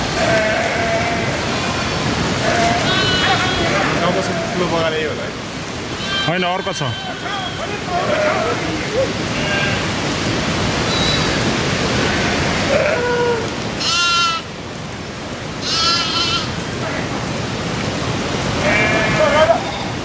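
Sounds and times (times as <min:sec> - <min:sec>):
sheep bleating: 0:00.2 - 0:04.9, 0:06.0 - 0:09.9, 0:12.0 - 0:14.5, 0:15.6 - 0:17.0, 0:18.6 - 0:20.0.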